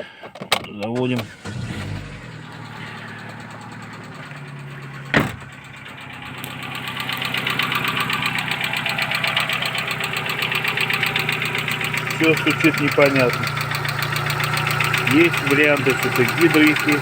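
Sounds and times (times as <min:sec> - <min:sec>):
car engine running: 0:01.2 - 0:17.0
rapid even engine knocking: 0:02.7 - 0:17.0
sharp thump: 0:05.1 - 0:05.6.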